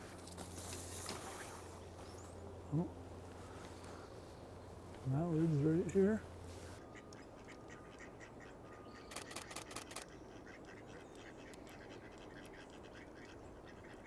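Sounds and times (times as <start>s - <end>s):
camera shutter burst: 9.1s - 10.1s.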